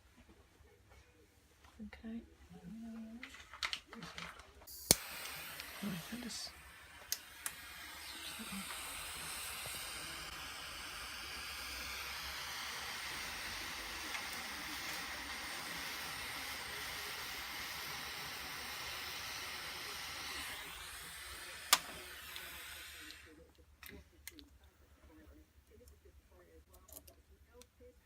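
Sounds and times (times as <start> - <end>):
gas torch flame hissing: 4.6 - 23.4.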